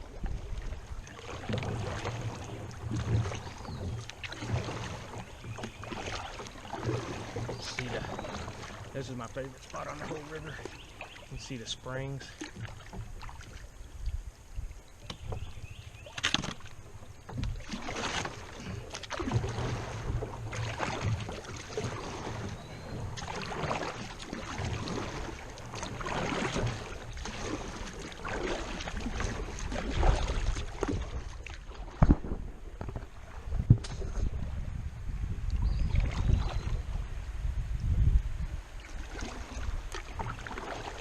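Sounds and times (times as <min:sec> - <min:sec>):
paddle splashing in water: 0:00.0 - 0:41.0
low rumble on microphone: 0:29.0 - 0:40.4.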